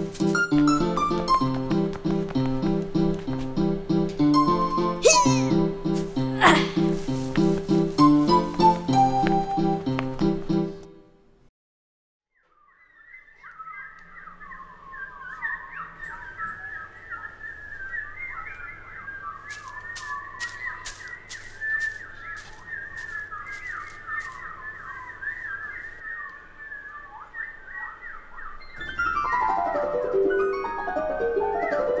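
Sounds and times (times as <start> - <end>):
bird-like warbling whistles: 12.4 - 29.4.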